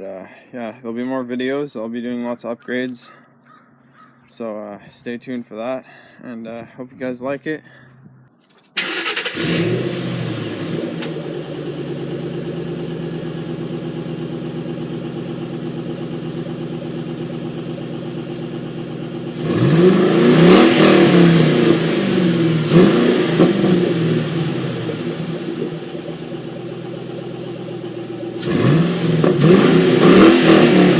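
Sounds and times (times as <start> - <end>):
car engine idling and revving: 8.8 - 30.9.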